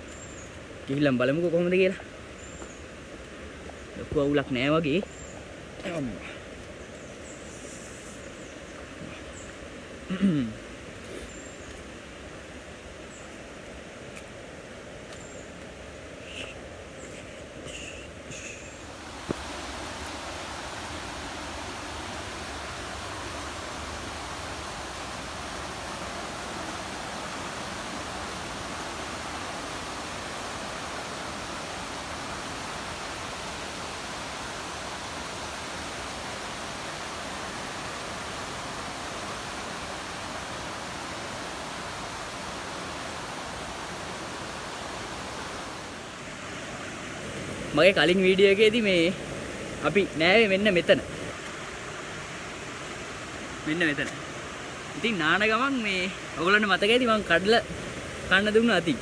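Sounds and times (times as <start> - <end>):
rushing mountain stream: 18.7 - 59.0.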